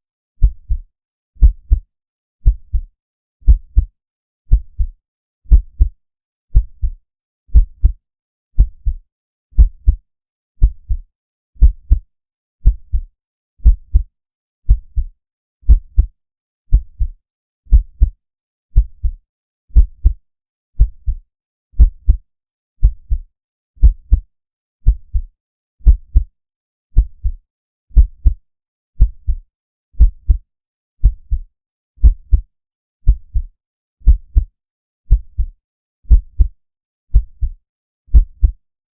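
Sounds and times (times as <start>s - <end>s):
heartbeat thumps: 0.4s - 0.8s, 1.4s - 1.8s, 2.4s - 2.9s, 3.5s - 3.9s, 4.5s - 4.9s, 5.5s - 5.9s, 6.5s - 7.0s, 7.6s - 8.0s, 8.6s - 9.0s, 9.6s - 10.0s, 10.6s - 11.0s, 11.6s - 12.0s, 12.6s - 14.1s, 14.7s - 15.1s, 15.7s - 16.1s, 17.7s - 18.2s, 19.8s - 20.2s, 20.8s - 21.2s, 21.8s - 22.2s, 22.8s - 23.2s, 23.8s - 24.2s, 24.8s - 25.3s, 25.9s - 26.3s, 27.0s - 27.4s, 28.0s - 28.4s, 29.0s - 29.4s, 30.0s - 30.4s, 31.0s - 31.4s, 32.0s - 32.4s, 33.0s - 33.5s, 34.1s - 34.5s, 35.1s - 35.5s, 36.1s - 36.5s, 37.1s - 37.5s, 38.1s - 38.6s.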